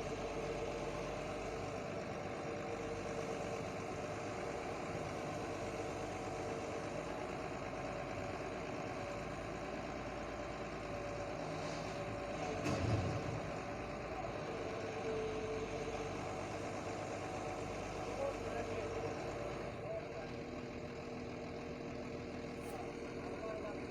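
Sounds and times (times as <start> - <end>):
heavy machinery engine running: 0.0 - 23.9.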